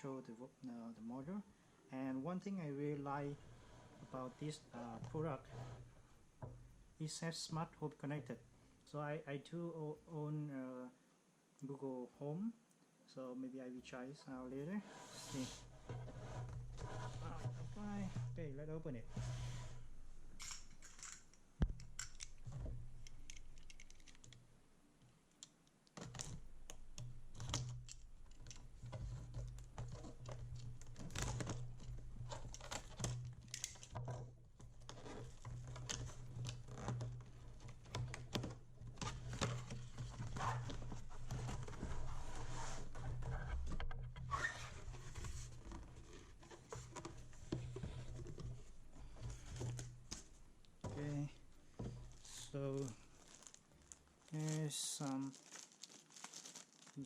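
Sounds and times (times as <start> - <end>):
cardboard packaging crinkling: 20.3 - 24.4, 51.9 - 57.0.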